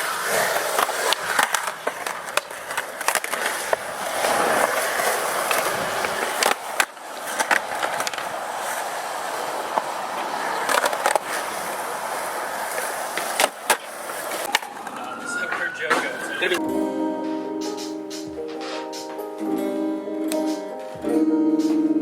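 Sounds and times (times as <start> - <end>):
sharp crack: 0.0 - 16.6
skateboard clacks: 0.0 - 16.6
skateboard wheels rolling: 0.0 - 22.0.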